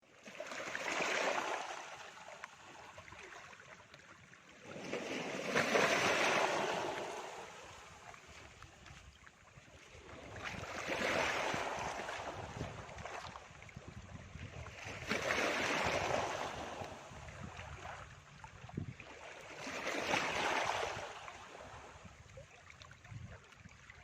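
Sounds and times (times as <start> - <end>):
small waves washing on shore: 0.1 - 24.0.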